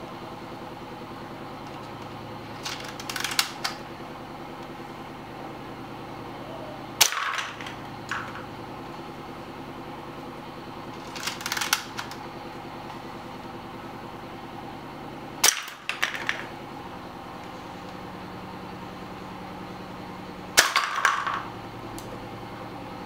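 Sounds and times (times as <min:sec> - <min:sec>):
steady low hum: 0:00.0 - 0:23.0
toy gun rattling burst: 0:02.5 - 0:03.8, 0:07.0 - 0:08.4, 0:11.0 - 0:12.2, 0:15.4 - 0:16.5, 0:20.6 - 0:21.3
toy gun bangs: 0:02.6 - 0:03.8, 0:07.0 - 0:08.4, 0:15.4 - 0:16.5, 0:20.6 - 0:21.5.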